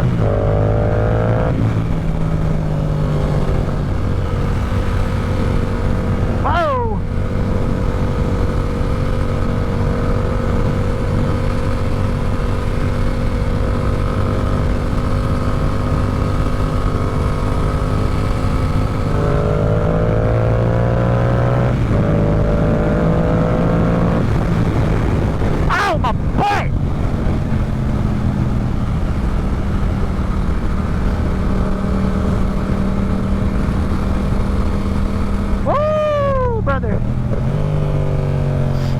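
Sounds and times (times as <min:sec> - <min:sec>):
motorcycle engine revving: 0:00.0 - 0:38.9.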